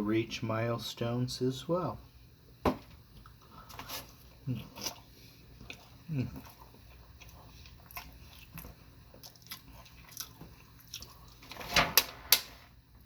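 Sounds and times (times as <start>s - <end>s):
person chewing food: 3.2s - 11.5s.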